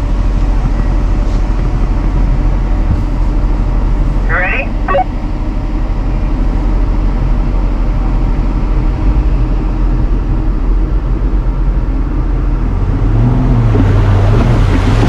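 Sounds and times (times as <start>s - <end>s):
car engine running under load: 0.0s - 15.0s.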